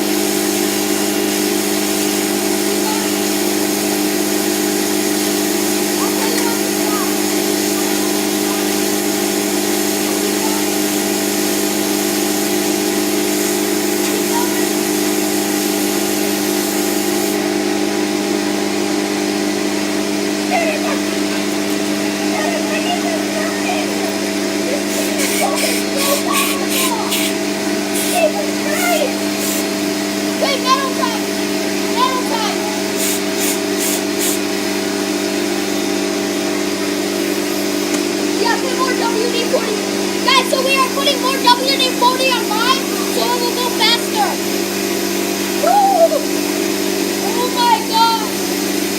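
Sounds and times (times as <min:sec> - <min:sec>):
aerosol can spraying: 0:00.0 - 0:17.5, 0:22.9 - 0:30.9, 0:32.0 - 0:34.8
spinner rushing hiss: 0:00.0 - 0:17.6, 0:19.7 - 0:36.5
power tool motor hum: 0:00.0 - 0:48.9.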